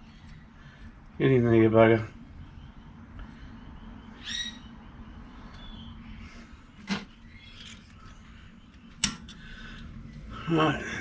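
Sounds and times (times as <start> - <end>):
low steady hum: 0.0 - 11.0
bird chirping: 2.0 - 10.7.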